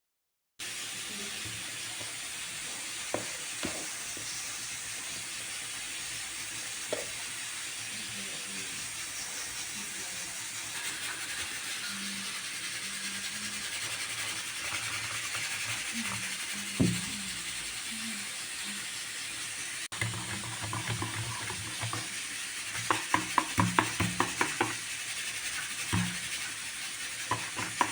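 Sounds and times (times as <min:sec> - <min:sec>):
food sizzling in hot oil: 0:00.6 - 0:27.9
utensil clicking against pan: 0:19.9 - 0:24.9, 0:27.3 - 0:27.9.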